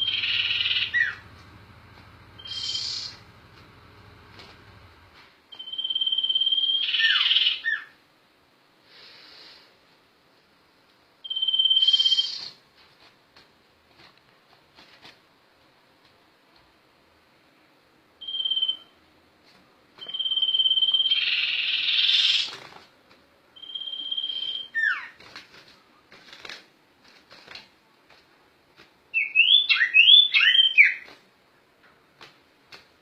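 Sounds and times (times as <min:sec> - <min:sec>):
bird whistling high notes: 0:02.4 - 0:03.2
harsh rasping bird call: 0:02.4 - 0:03.2.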